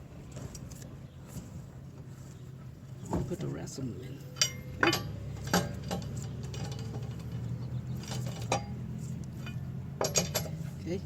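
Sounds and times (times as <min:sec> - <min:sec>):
metal lug nuts clinking: 0:04.1 - 0:11.0.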